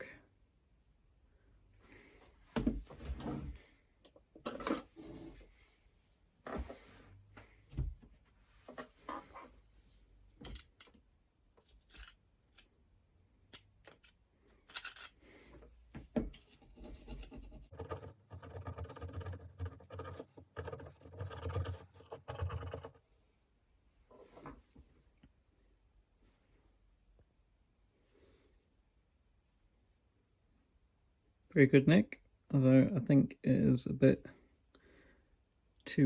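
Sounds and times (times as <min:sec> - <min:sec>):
metal bicycle parts clicking: 0:14.7 - 0:15.2.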